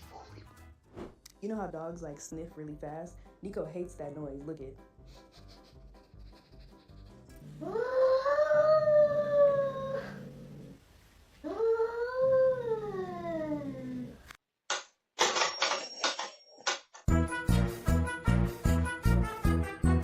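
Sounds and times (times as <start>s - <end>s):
pet howling: 7.4s - 10.8s.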